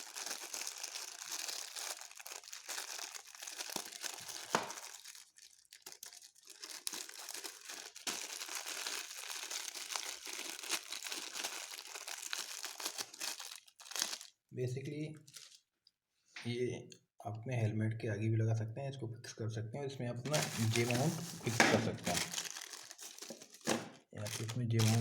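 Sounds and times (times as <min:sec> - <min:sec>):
plastic packaging crinkling: 0:00.0 - 0:14.4, 0:15.2 - 0:15.7, 0:20.3 - 0:25.0.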